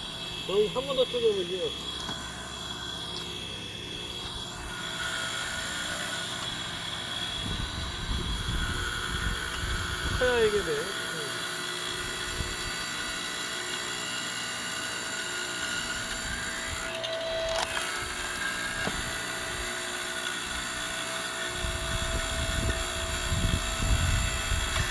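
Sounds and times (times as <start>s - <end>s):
firewood processor whining: 0.0s - 24.9s.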